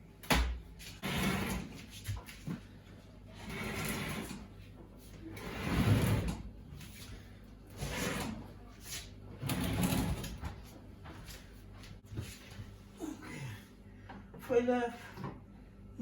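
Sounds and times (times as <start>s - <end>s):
washing machine scraping across floor: 0.9s - 2.3s, 3.3s - 10.7s.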